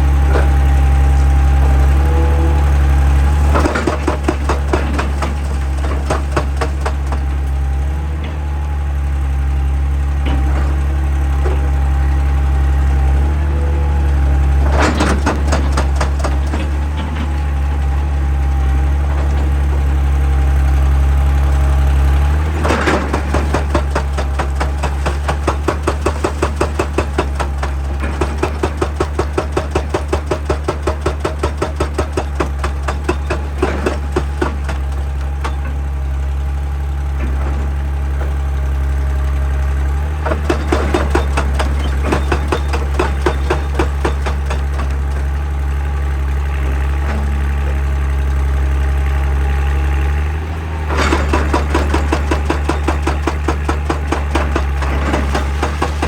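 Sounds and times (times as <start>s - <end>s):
hydraulic breaker hammering rock: 0.0s - 8.8s, 9.5s - 48.4s, 49.6s - 56.0s
diesel engine droning: 0.0s - 56.0s.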